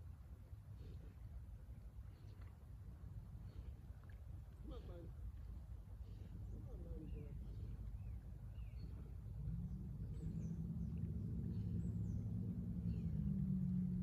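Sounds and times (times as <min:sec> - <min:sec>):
low engine hum: 0:00.0 - 0:14.0
small birds chirping: 0:03.4 - 0:13.8.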